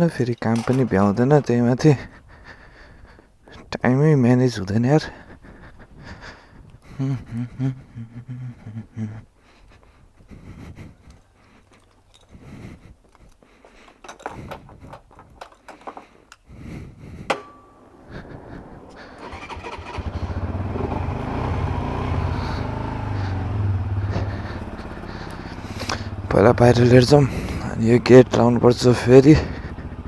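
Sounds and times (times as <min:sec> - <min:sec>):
handling clicks and knocks: 0:00.0 - 0:01.7, 0:13.0 - 0:16.5, 0:17.3 - 0:18.0
motorcycle engine idling: 0:17.4 - 0:30.0.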